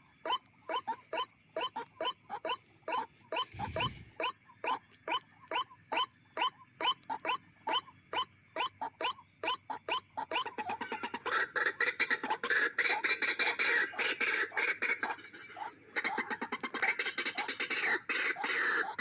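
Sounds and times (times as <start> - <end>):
waterhen croaking calls: 0.0 - 19.0.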